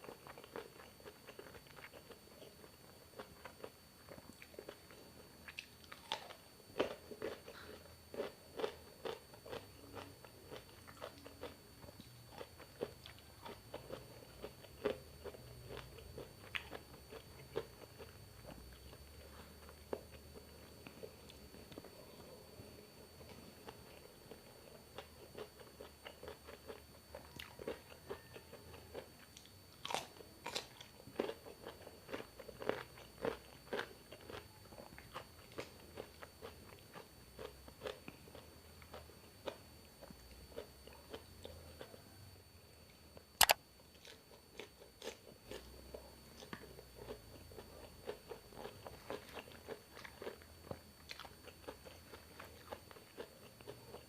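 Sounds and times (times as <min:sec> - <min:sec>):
person chewing: 0:00.0 - 0:22.4, 0:23.0 - 0:42.1, 0:43.4 - 0:54.0
sharp click: 0:43.4 - 0:43.6.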